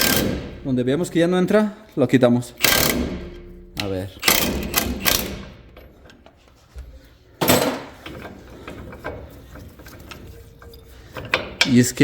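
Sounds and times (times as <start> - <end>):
ball joint press clanking: 0.0 - 0.8, 2.6 - 6.4, 7.4 - 12.0.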